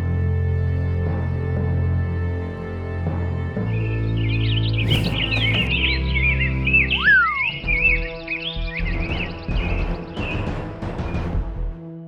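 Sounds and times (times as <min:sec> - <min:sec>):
background music with low notes: 0:00.0 - 0:12.0
birds chirping rapidly: 0:03.6 - 0:11.5.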